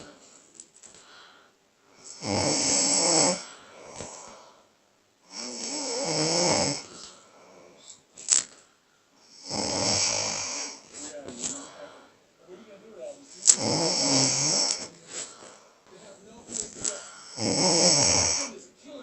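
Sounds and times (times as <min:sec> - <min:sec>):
person snoring: 0:01.9 - 0:08.4, 0:09.2 - 0:12.1, 0:13.2 - 0:15.8, 0:16.5 - 0:18.6.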